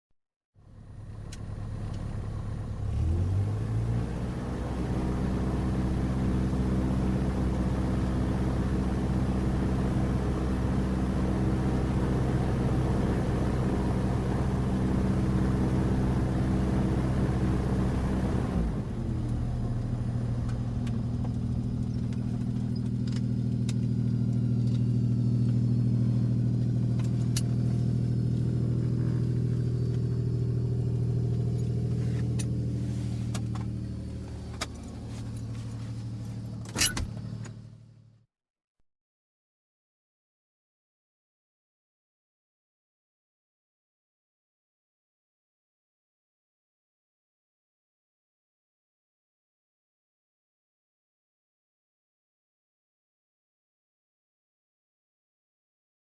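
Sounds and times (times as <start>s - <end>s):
propeller airplane engine idling: 0.6s - 2.9s, 4.9s - 38.0s.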